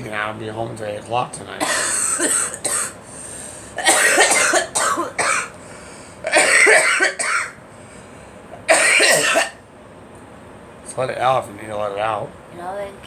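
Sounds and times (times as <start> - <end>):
girl coughing: 1.6 - 3.0, 3.8 - 5.5, 6.3 - 7.6, 8.7 - 9.6.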